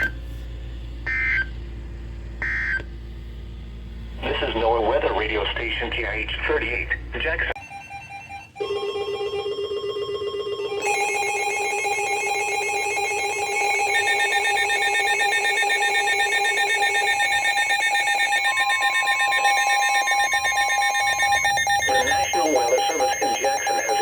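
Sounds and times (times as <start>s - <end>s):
pulsing electronic alarm tones: 1.1s - 1.5s, 2.4s - 2.8s, 7.6s - 24.0s.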